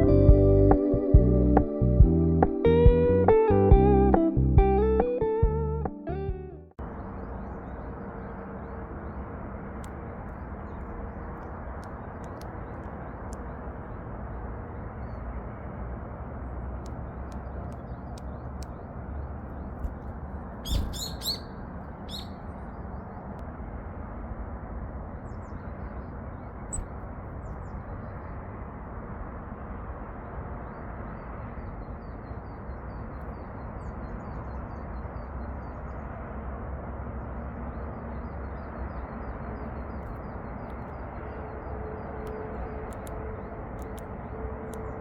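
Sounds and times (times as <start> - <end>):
high bird chirps: 20.6 - 23.0, 26.7 - 26.9.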